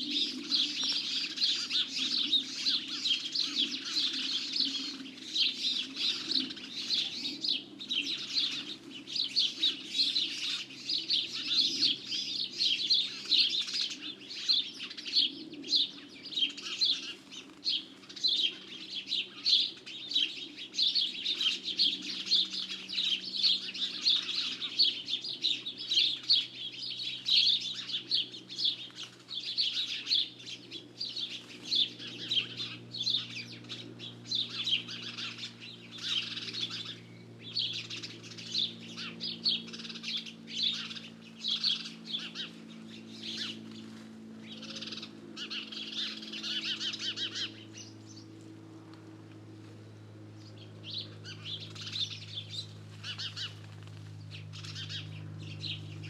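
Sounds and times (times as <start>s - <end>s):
faint low hum: 0.0s - 56.0s
songbirds chirping and singing: 0.0s - 56.0s.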